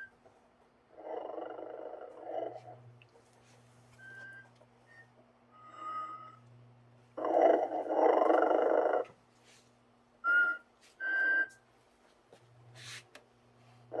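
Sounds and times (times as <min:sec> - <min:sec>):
faint steady hum: 0:00.0 - 0:14.0
toy snoring: 0:01.0 - 0:02.7, 0:07.2 - 0:09.1.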